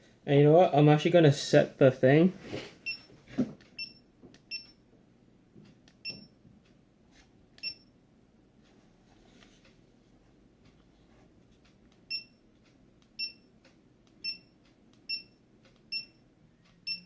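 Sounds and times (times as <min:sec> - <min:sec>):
camera beeping: 0:14.1 - 0:16.2.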